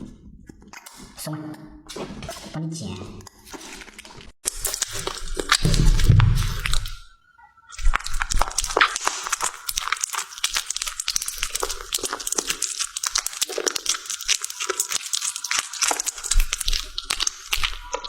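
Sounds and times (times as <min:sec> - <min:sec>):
cat eating crunchy food: 0:03.2 - 0:07.0, 0:07.8 - 0:18.0.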